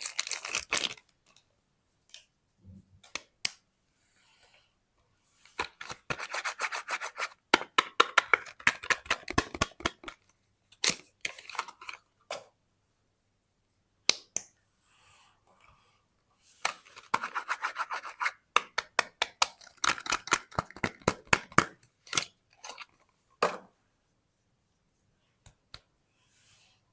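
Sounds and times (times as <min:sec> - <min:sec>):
packaging crinkling: 0:00.0 - 0:01.2.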